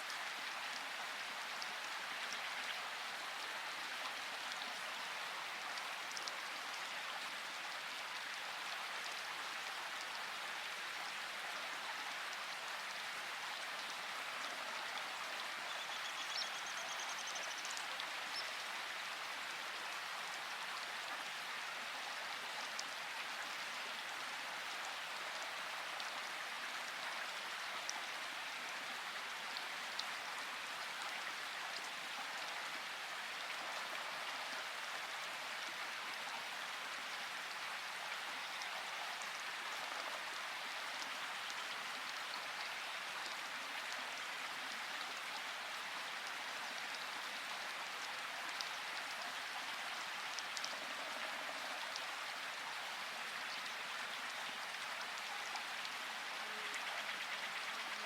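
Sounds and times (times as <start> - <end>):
steady rain falling: 0.0 - 58.0
faint raindrop ticks: 5.6 - 7.4, 15.6 - 18.8, 22.4 - 27.0, 48.4 - 52.1.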